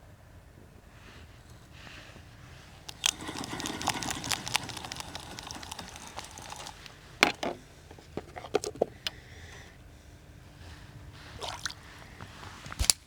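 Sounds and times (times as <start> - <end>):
fishing gear clicks and rattles: 2.5 - 9.7.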